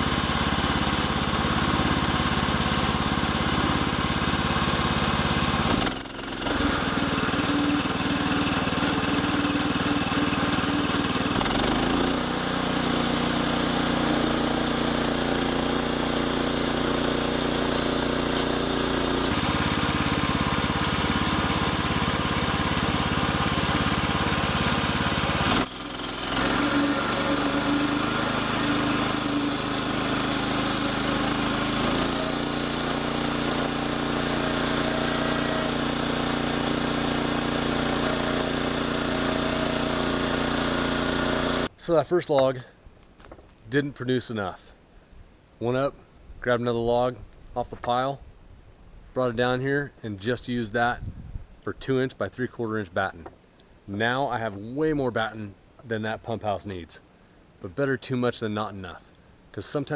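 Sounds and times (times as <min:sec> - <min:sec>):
sawmill engine running: 0:00.0 - 0:41.7.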